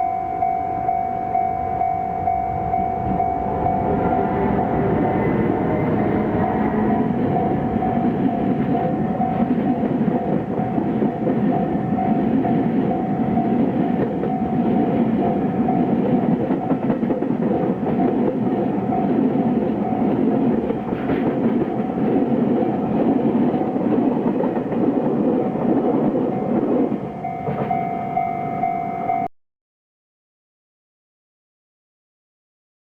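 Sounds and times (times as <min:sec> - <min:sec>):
steady high tone: 0:00.0 - 0:24.5, 0:25.4 - 0:29.3
train wheels clattering over rails: 0:03.0 - 0:28.2.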